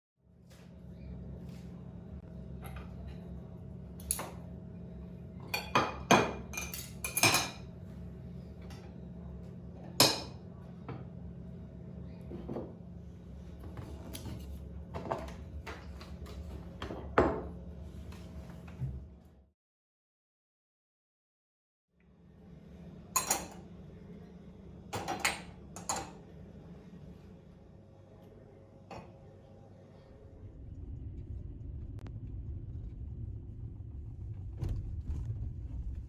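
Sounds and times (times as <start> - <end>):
steady low hum: 0.4 - 19.3, 22.1 - 36.0
dishes and cutlery clinking: 5.5 - 7.7, 23.2 - 23.6.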